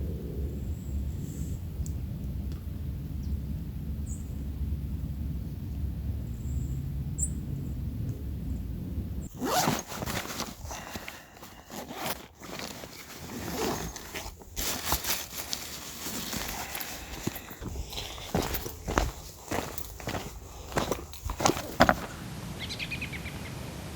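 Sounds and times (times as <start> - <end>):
zipper being pulled: 9.3 - 22.2.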